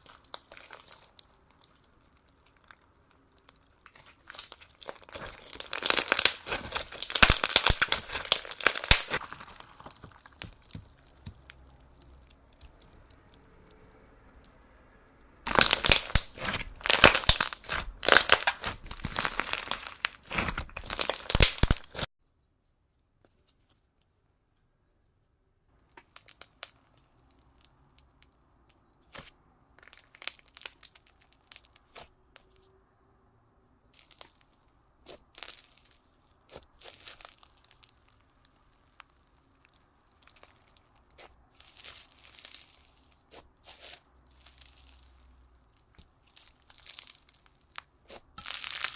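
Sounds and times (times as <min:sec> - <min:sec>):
slime crackling: 0:00.0 - 0:22.1, 0:29.0 - 0:32.6, 0:33.9 - 0:48.9.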